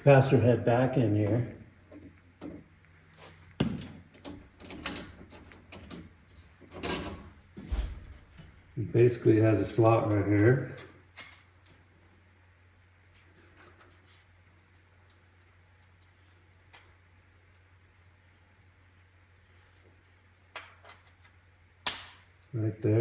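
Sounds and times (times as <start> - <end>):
metal parts clicking and rattling: 3.8 - 7.3, 9.8 - 11.8.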